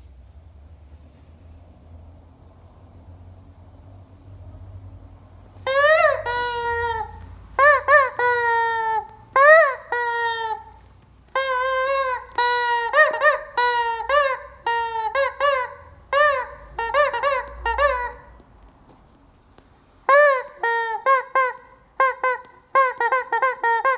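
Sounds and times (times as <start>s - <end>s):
rubber chicken toy squawking: 5.6s - 18.8s, 20.0s - 23.9s.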